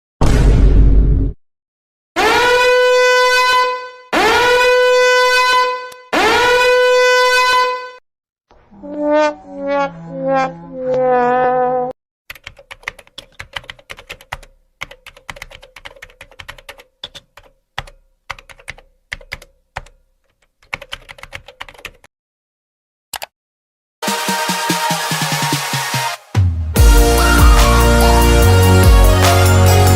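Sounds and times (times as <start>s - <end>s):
held horn-like note: 2.2s - 8.0s, 26.8s - 29.9s
fast typing on keyboard: 12.3s - 22.1s.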